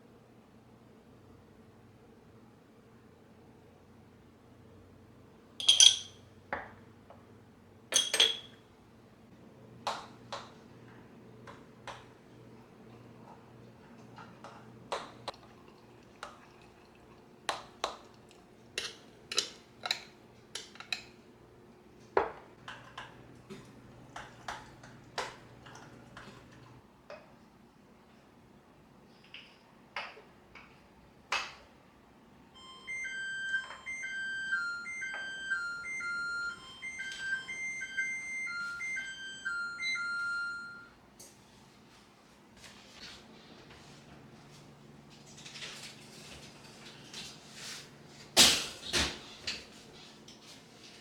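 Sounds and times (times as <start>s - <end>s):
kitchenware clinking and knocking: 5.6s - 6.7s, 7.9s - 8.6s.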